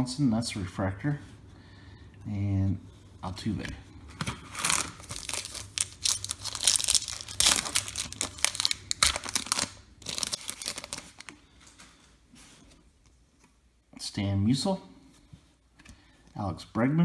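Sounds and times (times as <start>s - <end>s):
card pack wrapper tearing and crinkling: 4.2s - 11.4s.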